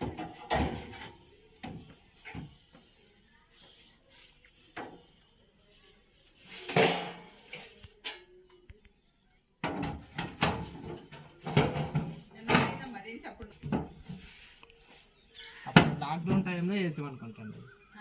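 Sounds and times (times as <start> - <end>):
knocking and clattering of objects: 0.0 - 3.0, 6.4 - 8.3, 9.6 - 14.3, 15.6 - 16.6.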